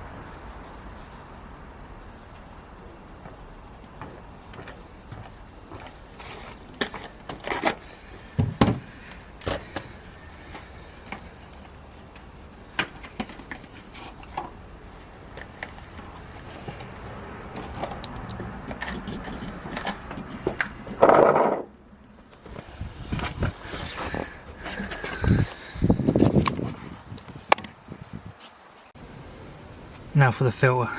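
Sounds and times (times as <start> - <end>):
clicks and scrapes of handling: 6.2 - 7.9, 15.3 - 25.5.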